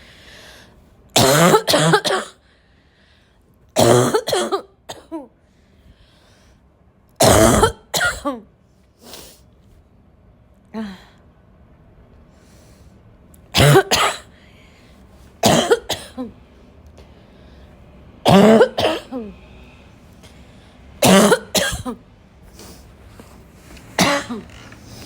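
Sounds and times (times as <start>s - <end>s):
person barking cough: 1.2s - 2.4s, 3.8s - 5.3s, 7.2s - 8.4s, 13.6s - 14.3s, 15.4s - 16.3s, 18.3s - 19.2s, 21.0s - 22.0s, 24.0s - 24.5s.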